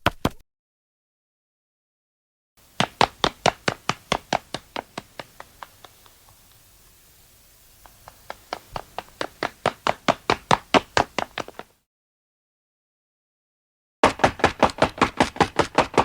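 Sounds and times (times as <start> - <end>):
quick running footsteps: 2.6 - 7.0, 7.6 - 11.8, 14.0 - 16.0.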